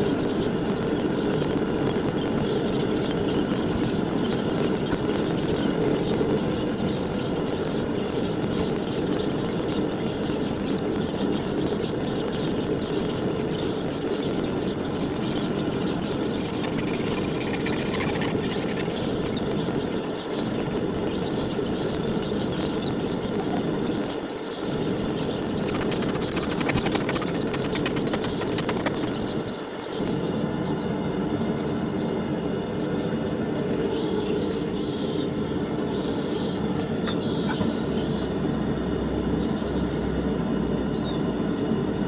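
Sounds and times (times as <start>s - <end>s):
forge burners rushing: 0.0s - 42.0s
fast ticking: 14.3s - 19.6s, 25.6s - 29.3s.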